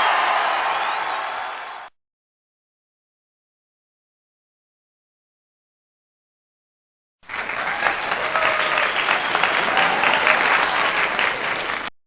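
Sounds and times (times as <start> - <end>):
crowd applauding and cheering: 0.0 - 1.9, 7.2 - 12.0.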